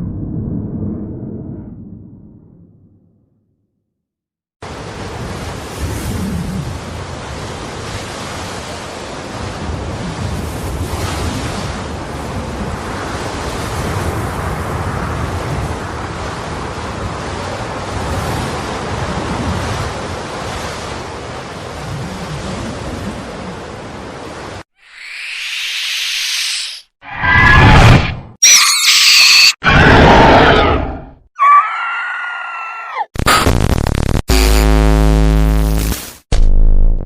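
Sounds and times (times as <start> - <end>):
deep rumble: 0.0 - 3.1.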